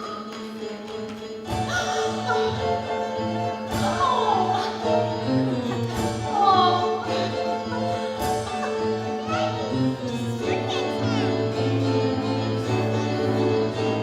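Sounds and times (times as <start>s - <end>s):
instrumental accompaniment: 0.0s - 14.0s
voices singing musical song: 1.5s - 14.0s.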